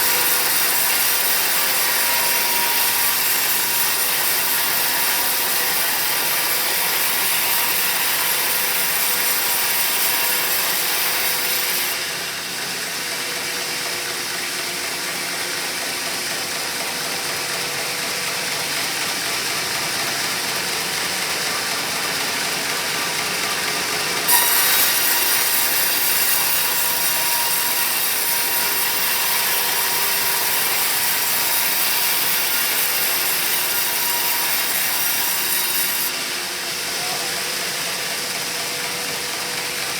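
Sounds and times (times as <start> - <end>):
sawmill saw cutting log: 0.0 - 39.9.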